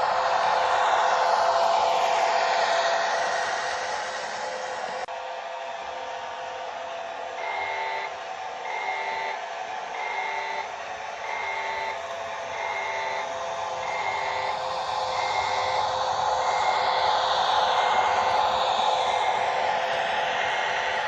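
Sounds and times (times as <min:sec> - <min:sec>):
simulated diesel engine hum: 0:00.0 - 0:05.1, 0:08.7 - 0:21.0
electronic warning beep: 0:07.4 - 0:08.1, 0:08.8 - 0:09.4, 0:10.0 - 0:10.6, 0:11.3 - 0:12.0, 0:12.6 - 0:13.3, 0:13.9 - 0:14.5.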